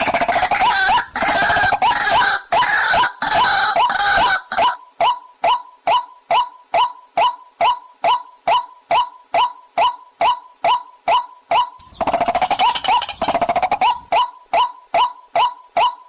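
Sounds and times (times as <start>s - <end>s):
waterhen calls: 0.0s - 16.0s.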